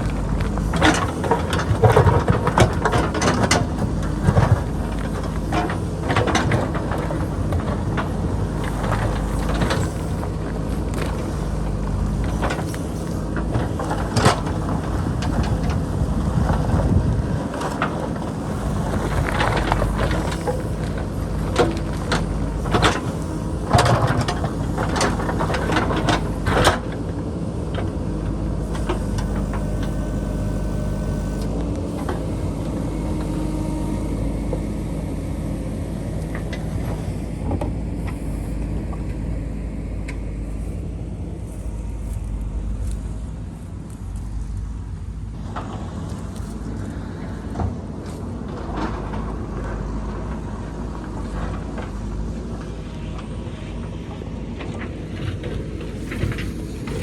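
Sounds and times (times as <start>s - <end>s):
diesel engine running under load: 0.0s - 57.0s.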